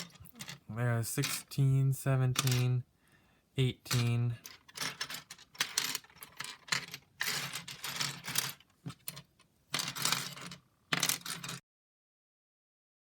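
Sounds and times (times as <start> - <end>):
plastic pieces clattering: 0.0 - 0.6, 3.9 - 11.6.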